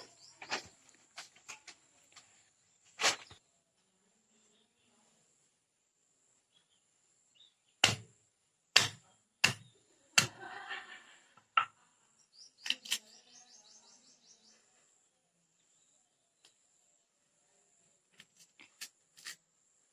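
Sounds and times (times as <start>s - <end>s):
bird chirping: 0.0s - 0.8s, 6.4s - 7.9s, 12.2s - 17.0s
sharp irregular knocks: 7.8s - 8.1s, 8.8s - 9.6s.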